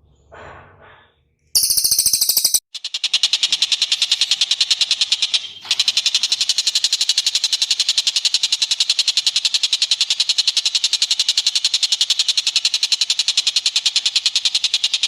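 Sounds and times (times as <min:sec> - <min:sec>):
bird high-pitched trill: 0:01.6 - 0:15.0.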